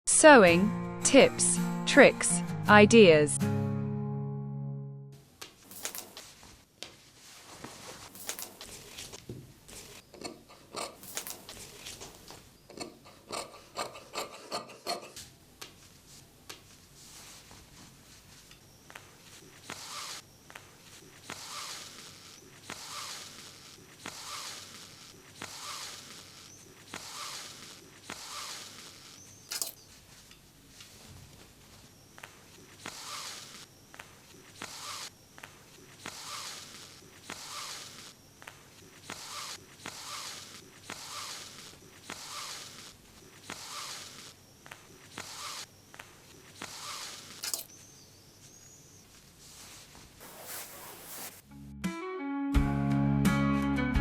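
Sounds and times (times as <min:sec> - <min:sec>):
sharp click: 0:05.7 - 0:06.2
thread pulled through denim: 0:49.6 - 0:51.4.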